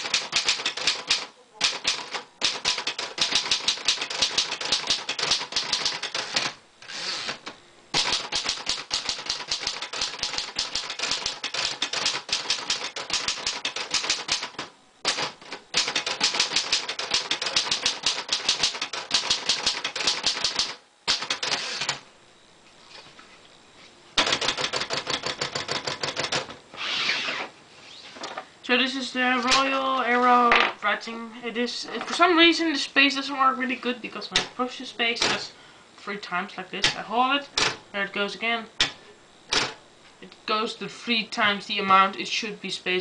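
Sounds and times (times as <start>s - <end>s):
manual typewriter typing: 0.0s - 7.4s, 8.0s - 22.0s, 24.2s - 26.6s.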